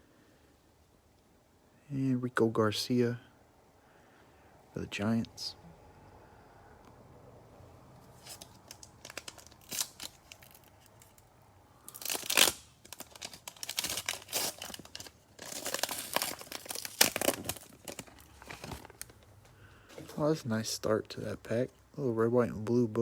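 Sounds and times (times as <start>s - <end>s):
cellophane wrapper crinkling: 8.1s - 20.3s
loud wrapper rip: 8.2s - 19.1s.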